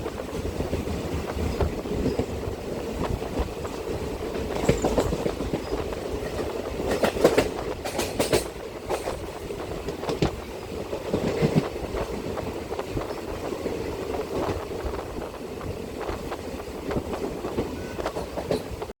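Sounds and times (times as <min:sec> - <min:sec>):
train rumbling on track: 0:00.0 - 0:19.0
wheels clattering over rail joints: 0:00.4 - 0:12.3.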